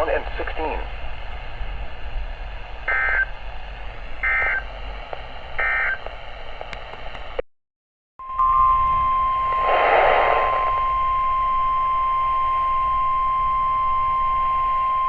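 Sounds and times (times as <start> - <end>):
steady alarm tone: 2.9 - 3.3, 4.2 - 4.7, 5.6 - 6.0, 8.2 - 15.0
swell of noise: 8.3 - 11.4.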